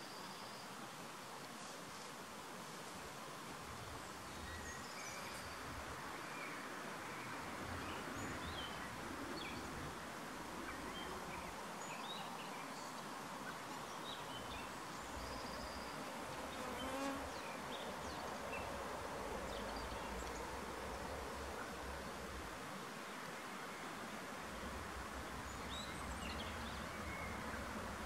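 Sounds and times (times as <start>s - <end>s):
steady outdoor hiss: 0.0s - 28.0s
bee buzzing: 16.5s - 17.3s.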